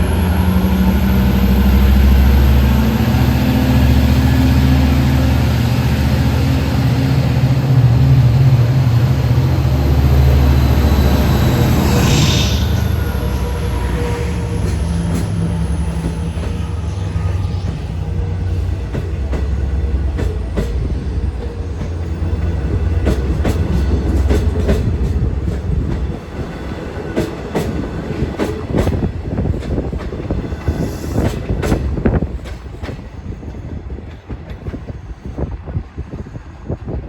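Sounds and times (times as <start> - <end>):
train drone: 0.0 - 37.0
train wheels clacking over rail joints: 18.4 - 35.4.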